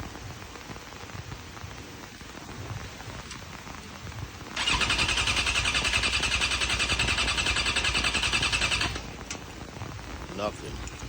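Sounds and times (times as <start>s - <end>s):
motorcycle starter cranking engine: 4.6s - 9.4s.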